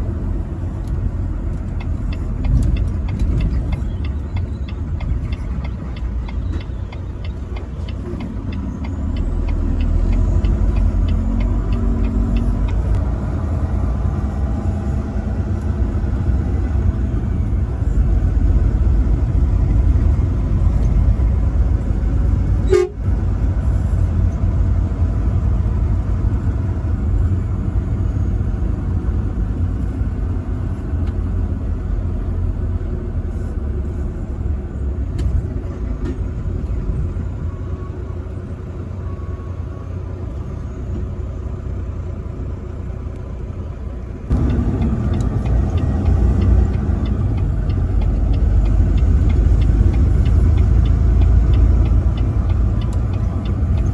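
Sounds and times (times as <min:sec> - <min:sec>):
truck engine and road rumble: 0:00.0 - 0:53.9
regular ticking: 0:00.8 - 0:13.2, 0:44.3 - 0:53.9.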